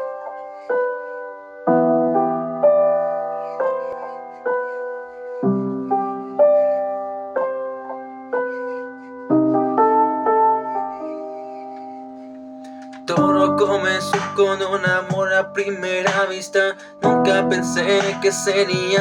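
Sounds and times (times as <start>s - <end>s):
slow piano chords: 0.0s - 19.0s
deep piano bass notes: 12.4s - 19.0s.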